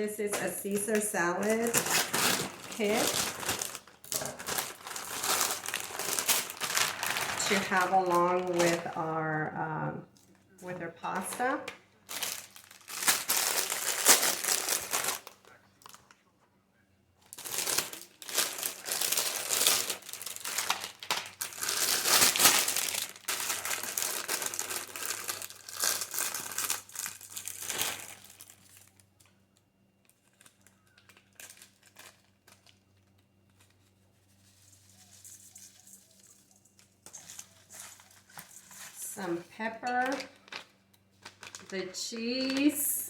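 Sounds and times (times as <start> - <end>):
plastic packaging crinkling: 0.2 - 9.6, 10.6 - 16.2, 17.2 - 43.0.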